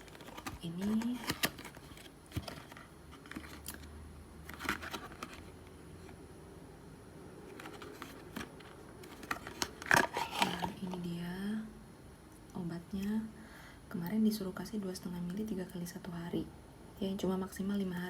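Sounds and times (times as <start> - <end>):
medicine bottle clicks and rustles: 0.0 - 3.9, 4.5 - 5.5, 7.6 - 11.0.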